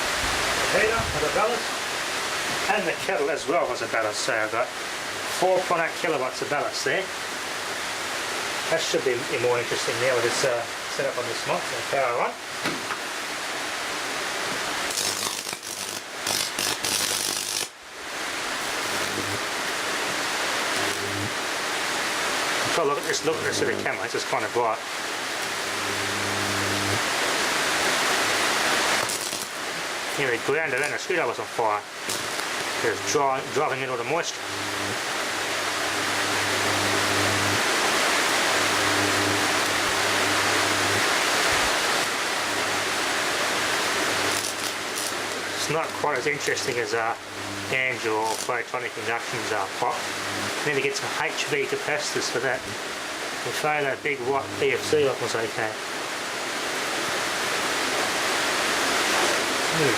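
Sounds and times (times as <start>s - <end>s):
electric arc hissing and sputtering: 0.0s - 4.6s, 14.1s - 55.8s, 56.6s - 59.9s
mains buzz: 14.5s - 51.2s, 51.8s - 55.3s
transformer humming low: 18.5s - 21.4s, 34.3s - 37.6s, 47.1s - 47.8s, 50.0s - 50.6s.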